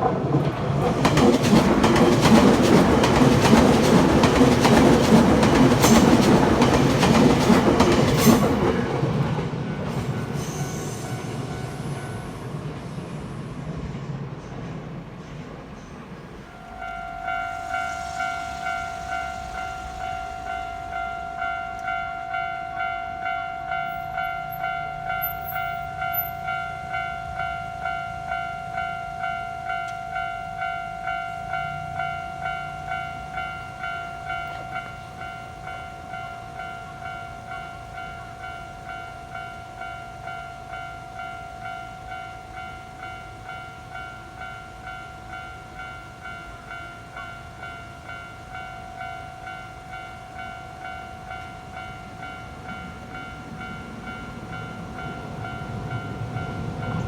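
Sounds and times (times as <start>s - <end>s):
train rumble: 0.0s - 57.0s
level crossing warning bell: 16.4s - 57.0s.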